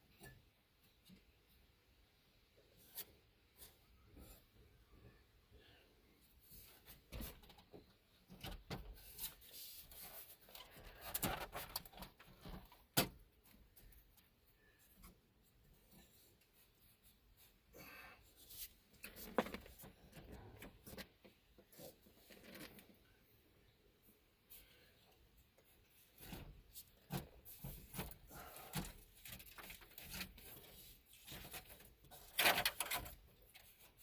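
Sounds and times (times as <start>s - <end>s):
plastic parts clicking and rubbing: 6.6s - 17.5s, 18.4s - 23.1s, 25.4s - 34.0s.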